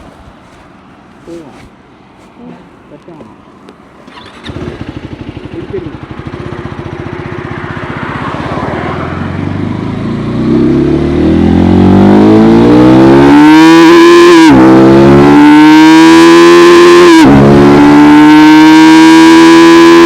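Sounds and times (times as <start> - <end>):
motorcycle engine accelerating: 4.0 - 20.0.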